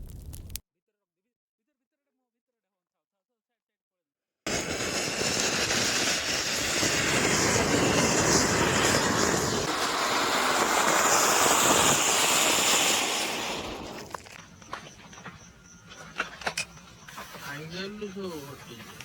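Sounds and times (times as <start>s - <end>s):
firecracker hissing: 0.0s - 0.6s, 4.5s - 19.0s.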